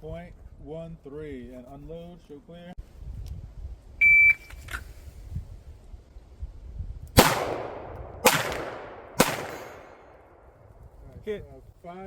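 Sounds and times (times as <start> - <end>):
shot timer beep: 4.0 - 4.5
pistol shots echoing: 7.2 - 10.5.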